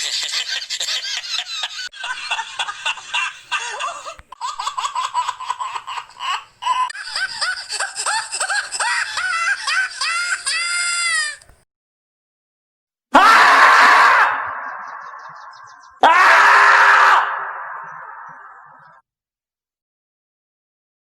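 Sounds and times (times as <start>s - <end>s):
high-pitched giggling: 0.0s - 11.4s.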